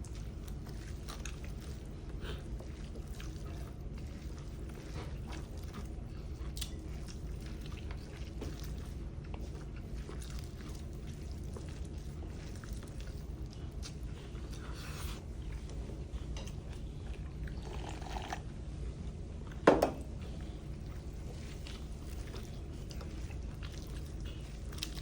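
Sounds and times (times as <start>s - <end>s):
soup slurping and swallowing: 17.5s - 18.4s.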